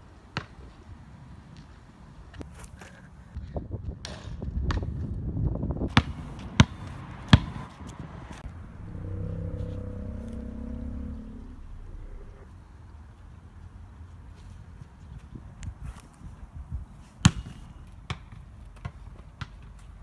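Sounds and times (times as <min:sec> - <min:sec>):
low humming drone: 0:08.4 - 0:12.5
low rumble: 0:08.4 - 0:12.5.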